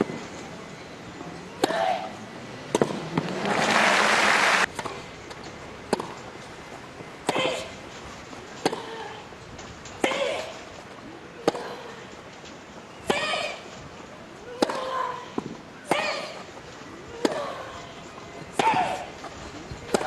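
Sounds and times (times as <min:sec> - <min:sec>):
racket striking tennis ball: 0:01.6 - 0:02.1, 0:02.7 - 0:03.7, 0:04.7 - 0:06.3, 0:07.2 - 0:07.8, 0:08.6 - 0:09.0, 0:14.5 - 0:16.4, 0:17.1 - 0:17.7, 0:18.5 - 0:19.2.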